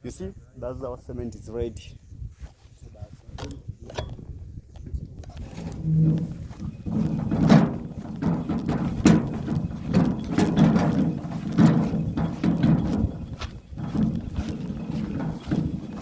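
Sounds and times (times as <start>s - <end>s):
rustling: 5.3s - 16.0s
footsteps on ground: 5.4s - 16.0s.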